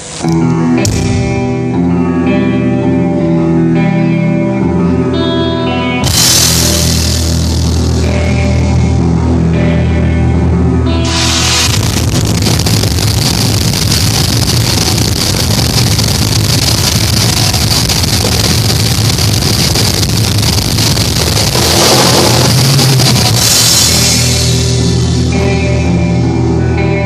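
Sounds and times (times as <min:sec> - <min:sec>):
distorted guitars: 0:00.0 - 0:27.0
drum kit with cymbals: 0:06.0 - 0:09.1, 0:11.0 - 0:26.1.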